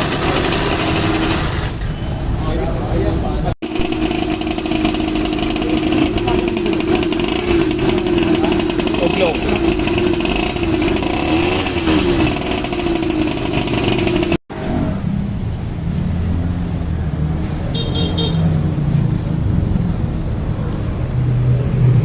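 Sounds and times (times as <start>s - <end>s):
two-stroke engine running: 0.0s - 1.8s, 3.6s - 14.4s.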